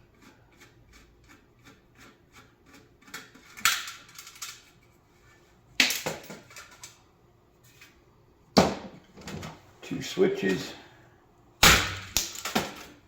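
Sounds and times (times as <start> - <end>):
metal parts clattering: 3.4 - 4.7.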